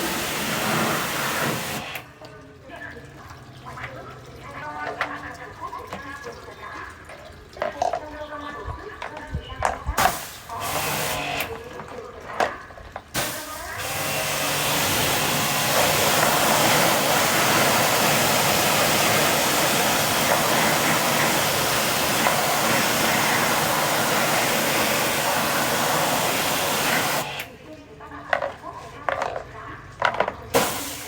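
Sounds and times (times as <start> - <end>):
machine rushing hiss: 0.0 - 2.0, 13.2 - 27.5, 30.6 - 31.0.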